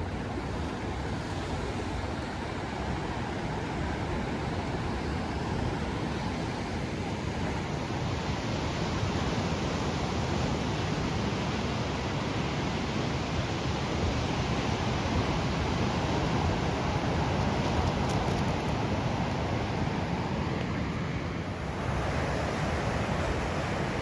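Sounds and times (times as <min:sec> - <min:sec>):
ocean surf rushing: 0:00.0 - 0:24.0
wind: 0:00.0 - 0:24.0.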